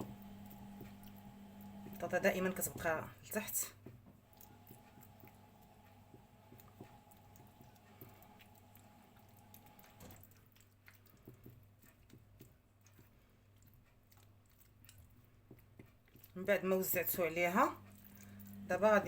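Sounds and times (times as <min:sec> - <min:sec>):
low steady hum: 0:00.0 - 0:11.0, 0:15.4 - 0:19.0
wet squishing: 0:04.2 - 0:19.0.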